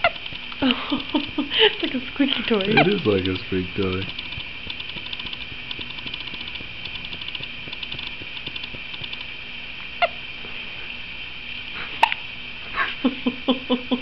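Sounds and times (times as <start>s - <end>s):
rapid mechanical clicking: 0.0s - 9.4s.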